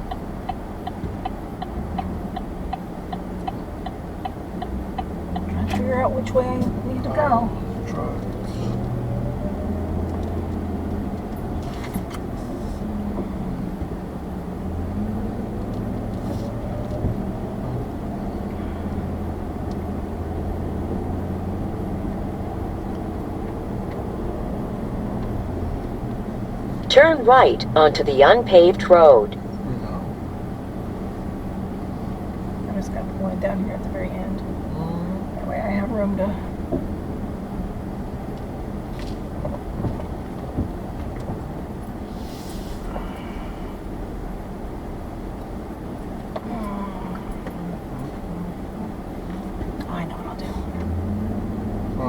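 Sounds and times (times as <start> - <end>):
road noise: 0.0 - 52.0
vehicle engine drone: 0.0 - 52.0
faint steady tones: 2.3 - 11.6, 25.2 - 37.7
brief hiss: 42.1 - 43.6.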